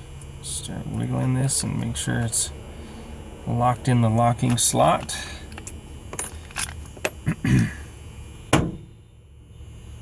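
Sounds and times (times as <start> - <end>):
metal lock parts clicking: 4.5 - 7.2.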